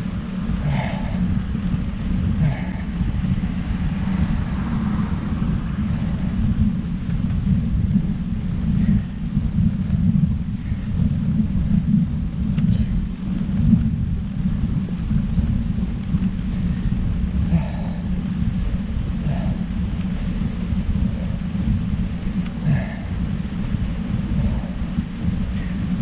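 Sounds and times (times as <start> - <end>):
wind buffeting microphone: 0.0 - 26.0
faint ticks: 12.5 - 18.6, 19.2 - 26.0.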